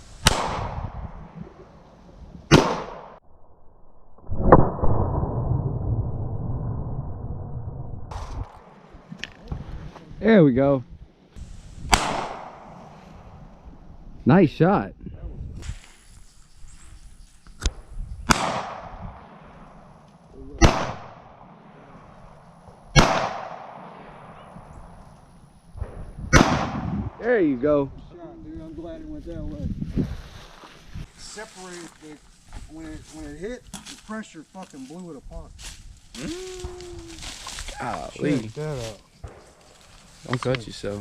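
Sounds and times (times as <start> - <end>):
pistol shots: 2.5 - 3.2, 11.9 - 12.7, 18.3 - 19.4, 20.6 - 21.4, 23.0 - 24.0, 26.3 - 26.9
low rushing noise: 3.2 - 10.2.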